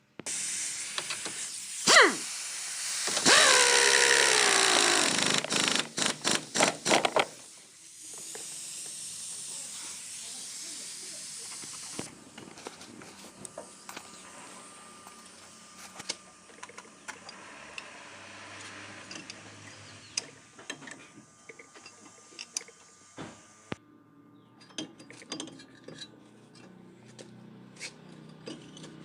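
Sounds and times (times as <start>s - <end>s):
steady hiss: 0.2s - 20.8s
metallic clicks of hand tools: 19.1s - 19.4s, 24.6s - 29.0s.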